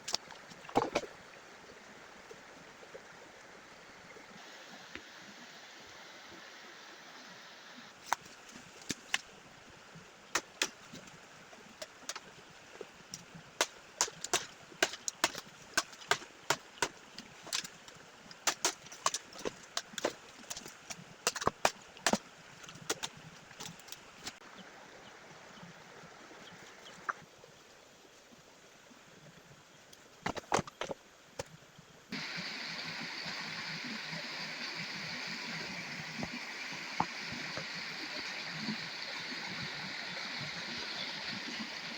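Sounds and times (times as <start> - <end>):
stream rushing: 0.0 - 27.2, 32.1 - 41.9
bamboo being chopped: 10.4 - 11.1, 13.6 - 24.4.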